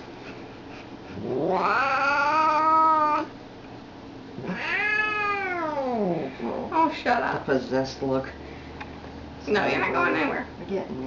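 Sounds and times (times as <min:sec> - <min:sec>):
cat yowling: 0:01.3 - 0:03.3, 0:04.4 - 0:06.2.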